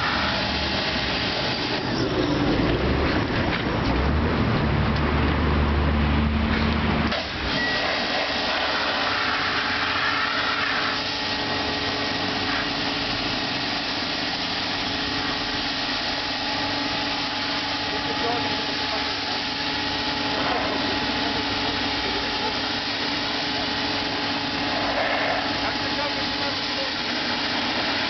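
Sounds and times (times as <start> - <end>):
motor running: 7.3 - 28.0.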